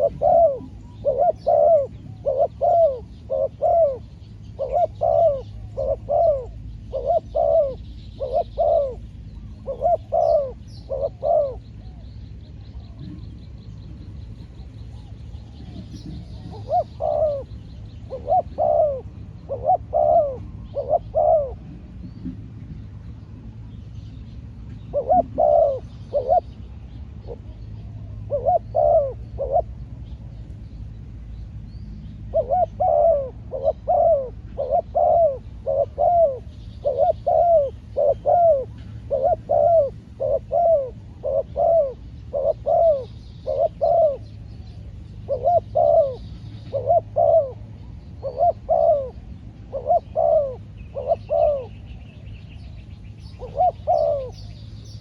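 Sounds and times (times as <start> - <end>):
doves cooing: 0.0 - 22.7, 24.5 - 30.3, 32.2 - 55.0.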